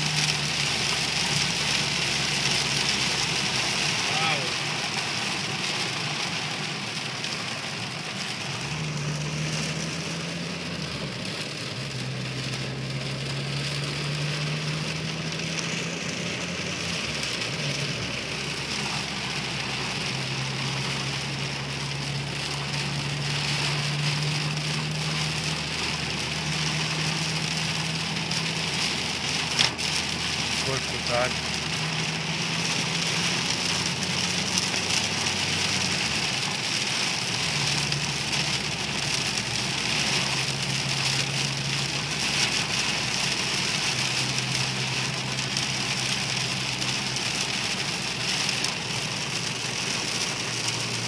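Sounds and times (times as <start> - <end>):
heavy rain on surfaces: 0.0 - 51.0.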